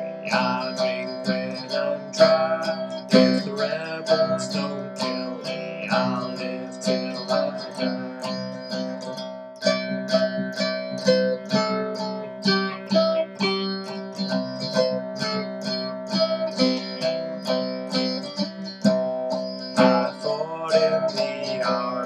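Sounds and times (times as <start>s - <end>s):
guitar picked melody: 0.0s - 22.0s
ringing low guitar notes: 0.0s - 22.0s.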